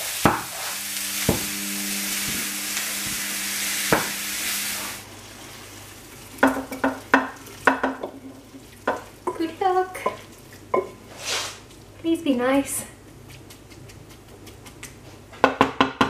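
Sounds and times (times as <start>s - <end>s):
meat sizzling in a frying pan: 0.0s - 12.4s.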